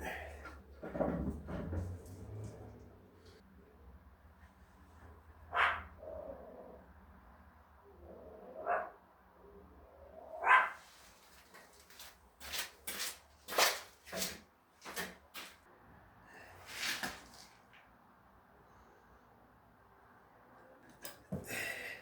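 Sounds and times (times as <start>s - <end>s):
dog barking: 5.5s - 6.0s, 8.6s - 9.0s, 10.4s - 10.8s.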